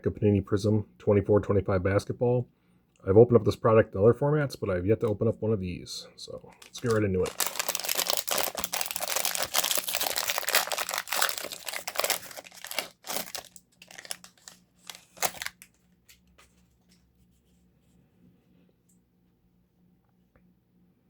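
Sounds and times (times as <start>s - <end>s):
plastic wrapper crinkling and tearing: 6.5s - 17.0s.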